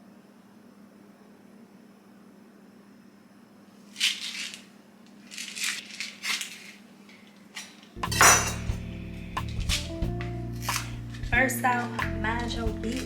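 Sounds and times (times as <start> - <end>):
popcorn kernels rattling in container: 3.8 - 7.8.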